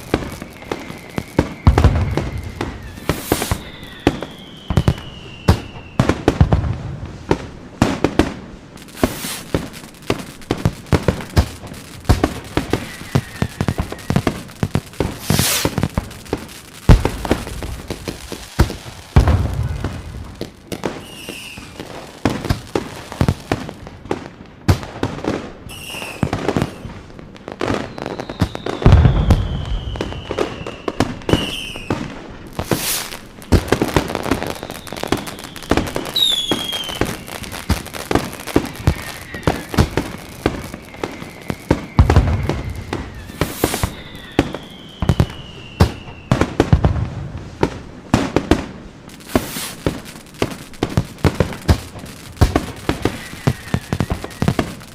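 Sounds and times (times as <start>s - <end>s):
firework shells booming: 0.0s - 27.0s, 27.6s - 54.9s
falling firework whistles: 0.0s - 54.9s
fireworks crackling and popping: 0.0s - 54.9s.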